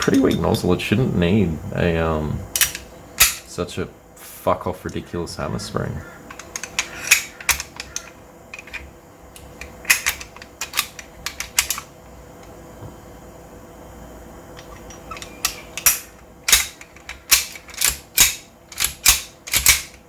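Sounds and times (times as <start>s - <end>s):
pistol parts clicking: 2.6s - 3.4s, 6.3s - 8.8s, 9.4s - 11.9s, 14.6s - 20.0s.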